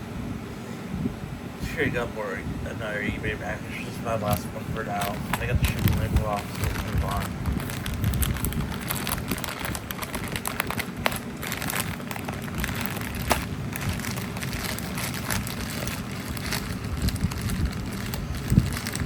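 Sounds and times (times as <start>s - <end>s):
packaging rustling and crackling: 4.2s - 19.0s.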